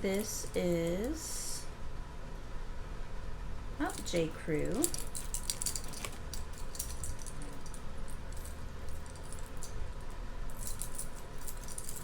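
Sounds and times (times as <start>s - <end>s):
bracelet pieces clicking and jingling: 4.8s - 9.7s.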